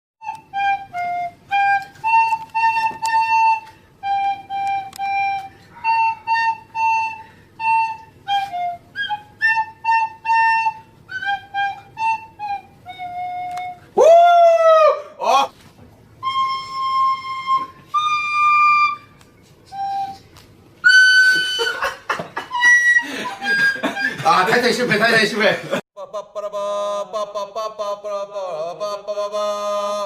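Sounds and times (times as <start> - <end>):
nose whistling melody: 0.2 - 14.2, 16.2 - 24.3.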